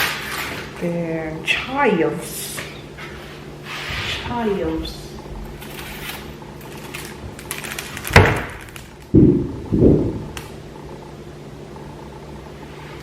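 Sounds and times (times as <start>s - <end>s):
steady background hum: 0.0s - 13.0s
dull thumps: 8.1s - 10.4s.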